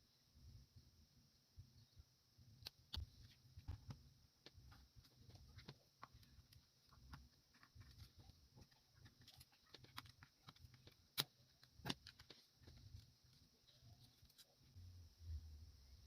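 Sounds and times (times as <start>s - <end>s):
light clicks and taps of small parts: 2.6s - 14.5s.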